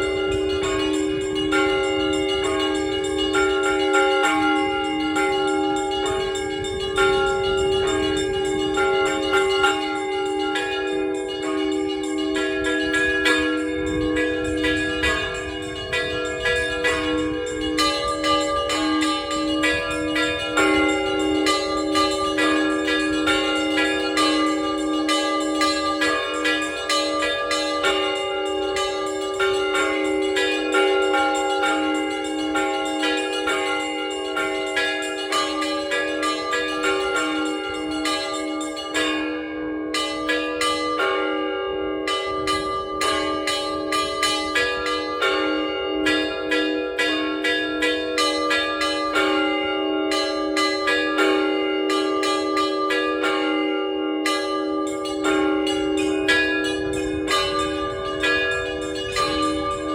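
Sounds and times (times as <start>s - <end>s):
small bells ringing rapidly: 0.0s - 39.3s, 39.9s - 59.9s
low bell ringing: 0.0s - 59.9s.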